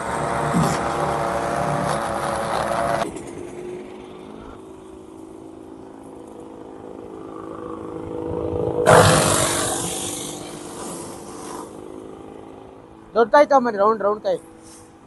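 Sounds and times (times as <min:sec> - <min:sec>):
wood chipper grinding: 0:00.0 - 0:13.2
engine running: 0:00.0 - 0:15.0.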